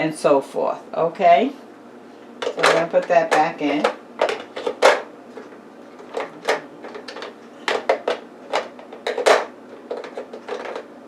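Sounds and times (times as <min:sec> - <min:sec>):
plastic parts knocking and clicking: 0:02.4 - 0:10.9.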